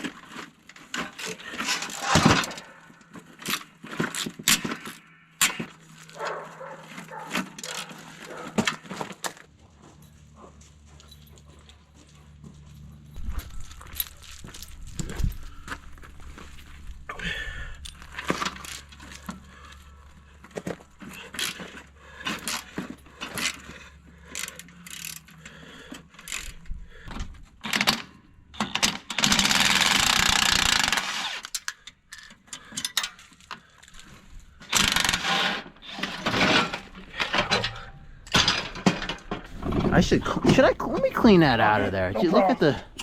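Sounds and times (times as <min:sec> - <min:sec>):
metal clanks and knocks: 0:01.0 - 0:02.8, 0:36.0 - 0:40.8.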